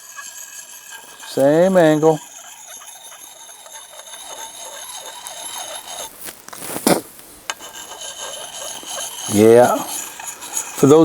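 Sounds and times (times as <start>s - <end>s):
puck rasping on axe edge: 0.0s - 11.0s.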